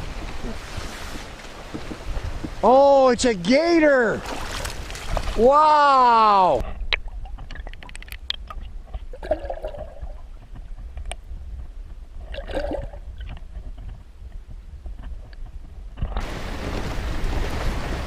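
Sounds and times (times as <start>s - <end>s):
water splashing and sloshing: 0.0s - 18.0s
clicks and knocks from fishing gear: 6.6s - 9.1s.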